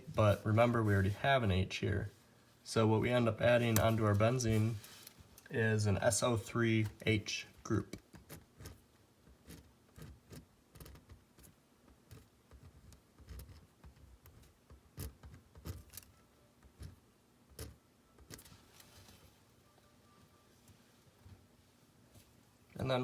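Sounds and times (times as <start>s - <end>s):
pen tapping and clicking on paper: 9.4s - 11.5s, 12.1s - 16.0s.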